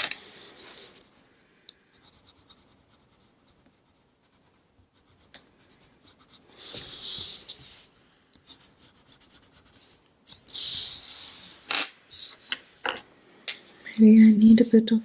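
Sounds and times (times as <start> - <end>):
pencil scratching on paper: 1.9 - 7.8, 8.4 - 11.2.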